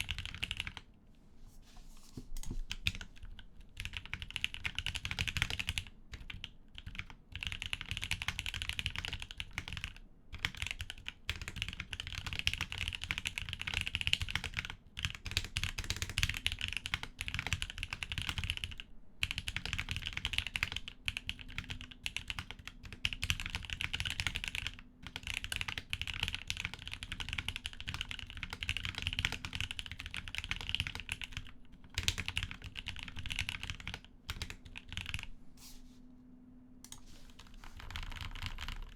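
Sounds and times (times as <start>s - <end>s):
typing on mechanical keyboard: 0.0s - 0.8s, 2.7s - 35.3s, 36.9s - 38.9s.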